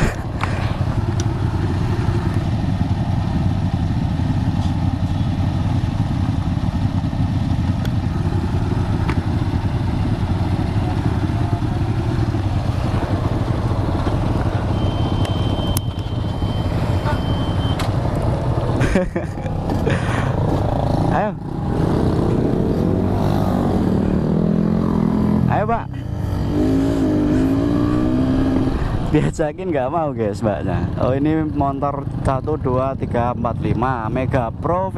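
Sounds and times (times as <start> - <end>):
motorcycle engine running: 0.0 - 29.3.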